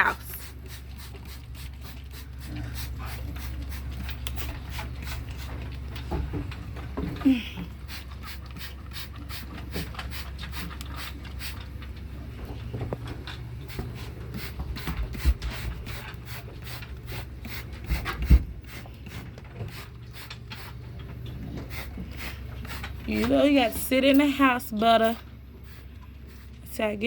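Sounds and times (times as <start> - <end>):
heavy thumps: 17.8 - 18.7.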